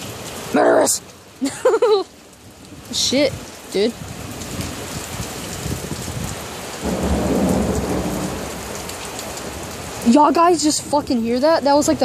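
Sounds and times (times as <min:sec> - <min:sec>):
heavy rain: 0:00.0 - 0:12.0
thunder rumbling: 0:05.6 - 0:12.0.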